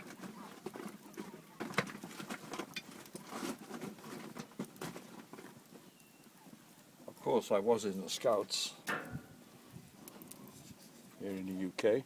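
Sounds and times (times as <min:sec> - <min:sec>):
wood fire crackling and popping: 0:00.0 - 0:12.0.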